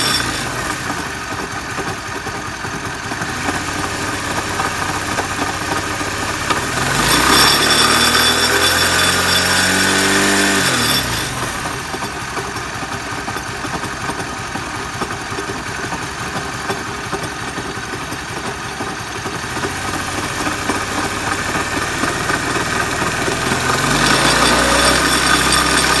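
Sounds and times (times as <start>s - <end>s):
engine revving and idling: 3.0s - 11.9s, 19.2s - 26.0s.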